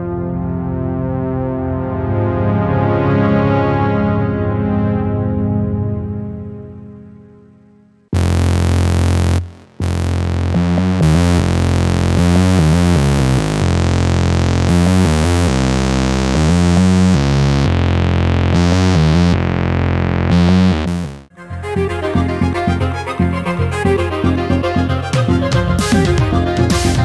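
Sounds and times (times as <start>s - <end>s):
held synth bass note: 8.1s - 27.0s
upper synth notes: 8.2s - 27.0s.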